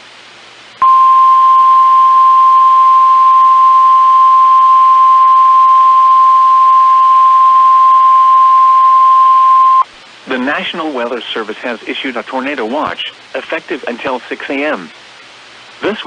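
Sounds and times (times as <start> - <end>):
faint radio hiss: 0.0 - 16.0
steady alarm beep: 0.8 - 9.8.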